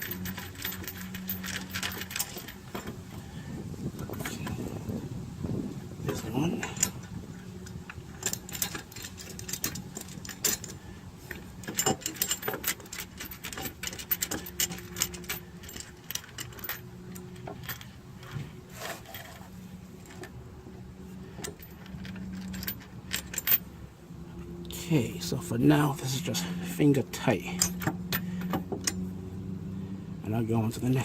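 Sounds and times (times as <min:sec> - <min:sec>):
metal bolts clicking and clinking: 0:00.0 - 0:03.2, 0:06.0 - 0:20.4, 0:21.0 - 0:24.6, 0:26.0 - 0:29.1.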